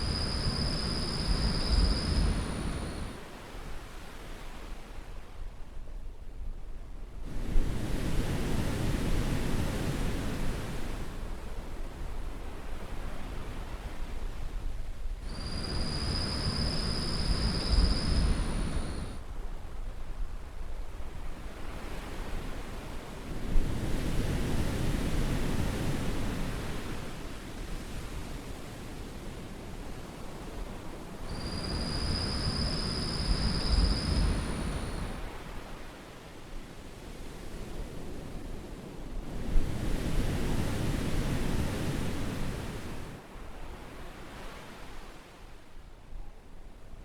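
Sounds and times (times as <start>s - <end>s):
high insect whine: 0.0s - 3.2s, 15.3s - 19.2s, 31.3s - 35.5s
sea surf washing on shore: 0.0s - 4.2s, 15.3s - 19.2s, 29.5s - 45.2s.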